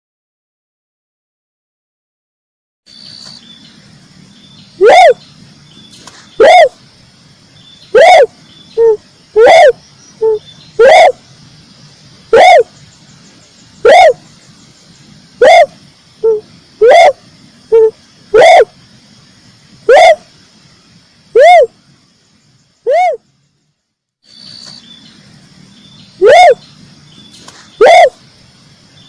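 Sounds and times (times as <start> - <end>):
recorded dove cooing: 4.8 - 5.2, 6.4 - 6.8, 7.9 - 11.2, 12.3 - 12.8, 13.8 - 14.2, 15.4 - 18.8, 19.8 - 20.3, 21.4 - 21.8, 22.9 - 23.2, 26.2 - 26.6, 27.4 - 28.2.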